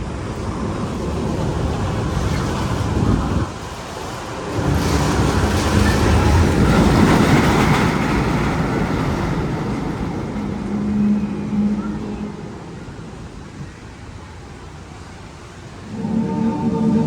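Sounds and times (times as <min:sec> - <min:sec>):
roller coaster rumbling: 0:00.0 - 0:17.0
short steady hum: 0:15.8 - 0:17.0.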